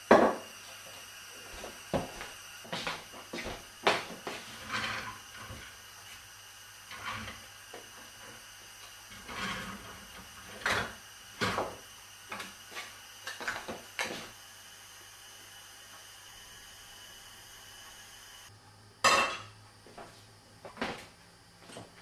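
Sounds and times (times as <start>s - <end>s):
steady hiss: 0.0s - 18.5s
short knocks and scrapes: 3.4s - 5.7s, 9.1s - 11.8s.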